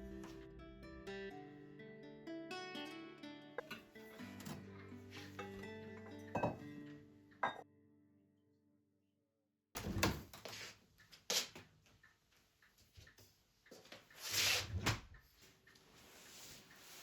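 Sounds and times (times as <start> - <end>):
background music: 0.0 - 7.8.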